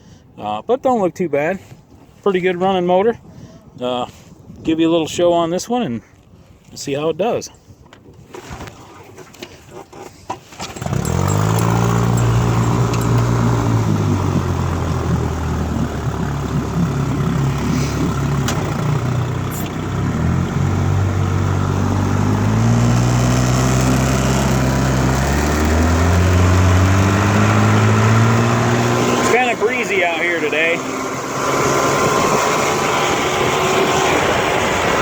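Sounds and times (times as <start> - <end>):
outboard motor running: 9.7 - 35.0.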